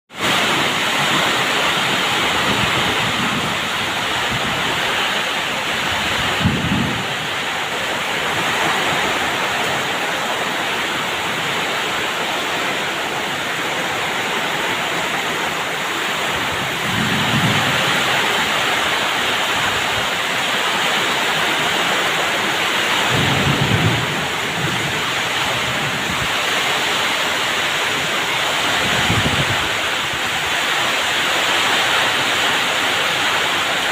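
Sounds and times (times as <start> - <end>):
heavy rain pouring: 0.1 - 33.9
low thunder rumbles: 0.2 - 13.2, 16.2 - 20.2, 22.8 - 26.8
strong wind: 0.2 - 33.9.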